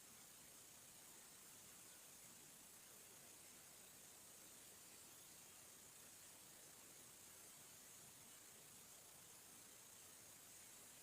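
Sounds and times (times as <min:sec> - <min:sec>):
faint steady hiss: 0:00.0 - 0:11.0.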